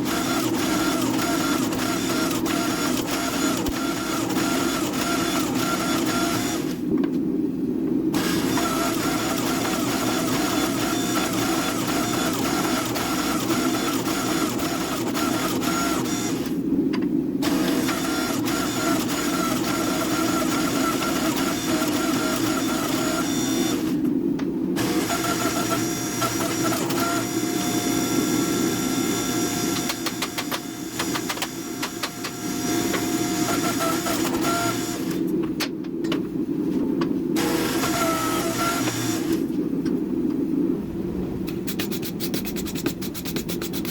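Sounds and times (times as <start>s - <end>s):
workshop machine whining: 0.0s - 6.8s, 8.2s - 16.6s, 17.4s - 24.1s, 24.8s - 35.4s, 37.4s - 39.5s.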